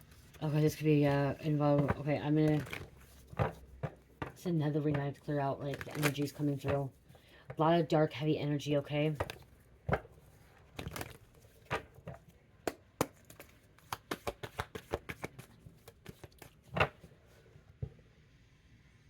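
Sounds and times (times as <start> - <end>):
cards being shuffled: 0.0 - 7.0, 13.0 - 17.1.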